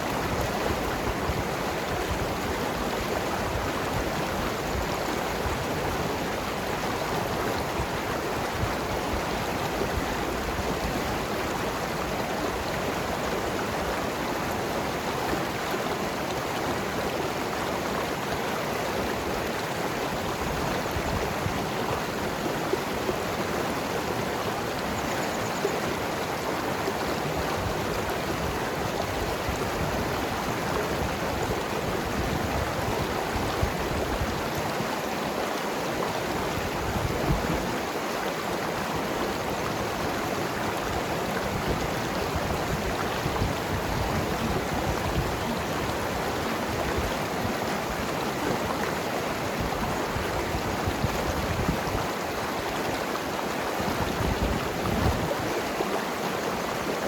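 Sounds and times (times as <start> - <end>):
river flowing over rocks: 0.0 - 57.0.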